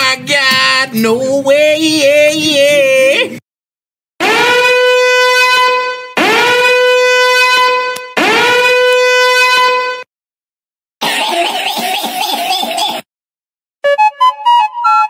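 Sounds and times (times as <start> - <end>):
horn-like meme sound effect: 4.2 - 10.1.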